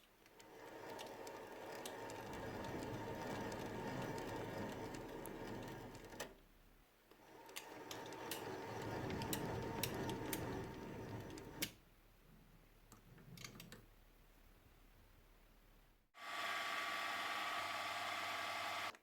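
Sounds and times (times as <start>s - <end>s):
workshop machine whining: 0.4s - 6.4s, 7.2s - 11.8s, 16.2s - 19.0s.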